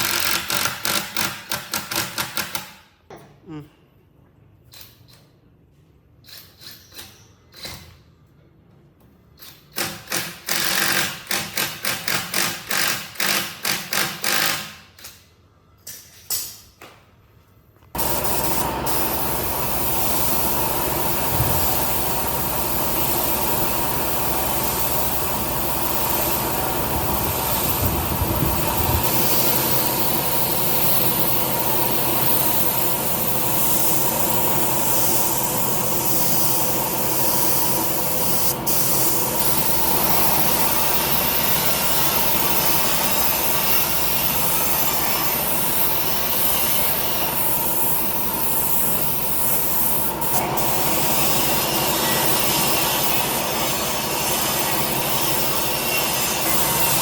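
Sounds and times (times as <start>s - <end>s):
spray gun hissing: 18.0s - 57.0s.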